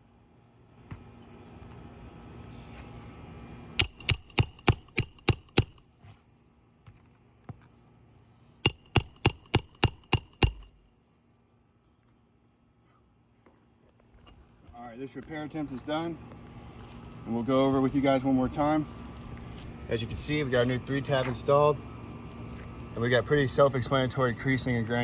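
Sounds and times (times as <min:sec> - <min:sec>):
hammer driving nails: 0:03.8 - 0:05.8, 0:08.7 - 0:10.8.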